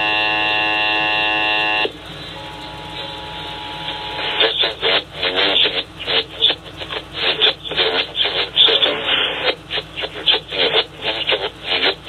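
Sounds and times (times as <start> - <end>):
voice over radio: 3.8 - 12.0.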